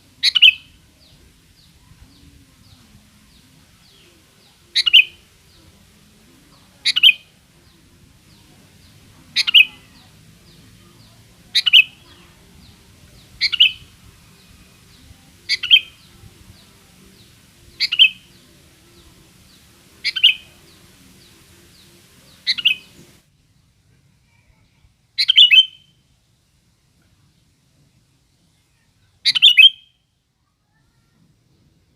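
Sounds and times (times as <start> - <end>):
bird chirping call: 0.2 - 0.7, 4.8 - 5.2, 9.4 - 10.6, 11.5 - 12.0, 13.4 - 14.6, 15.5 - 16.1, 17.7 - 18.4, 20.0 - 20.6, 22.3 - 23.0, 25.2 - 26.0, 29.2 - 30.0.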